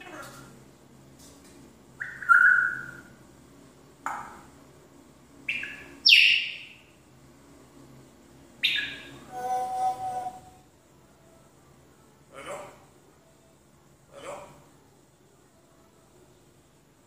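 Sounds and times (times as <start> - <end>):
parrot whistled calls: 2.0 - 3.1, 5.5 - 6.8, 8.6 - 10.6.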